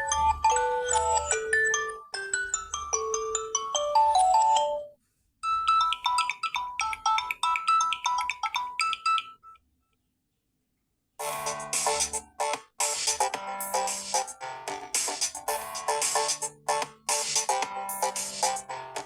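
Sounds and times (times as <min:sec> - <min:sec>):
chiming ringtone melody: 0:00.0 - 0:09.6, 0:15.5 - 0:19.0
higher ringtone melody: 0:00.0 - 0:09.6, 0:12.8 - 0:19.0.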